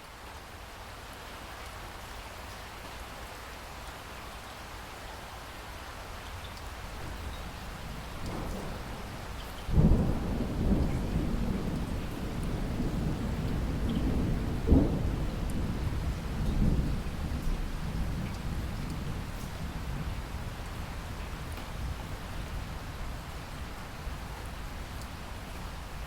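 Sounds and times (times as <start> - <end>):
steady rain: 0.0 - 26.0
thunder crack and rumble: 7.0 - 23.3.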